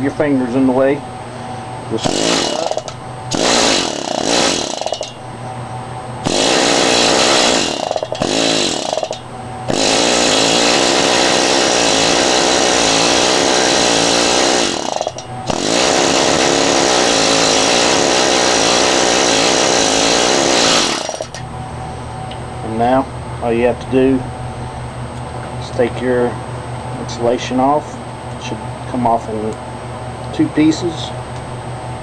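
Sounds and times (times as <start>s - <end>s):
air hammer pounding on wire: 2.0s - 5.4s, 6.2s - 21.4s.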